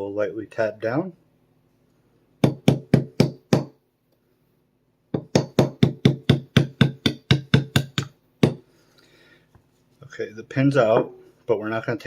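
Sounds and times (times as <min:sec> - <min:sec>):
hammer tapping a pin punch: 0:05.1 - 0:08.6.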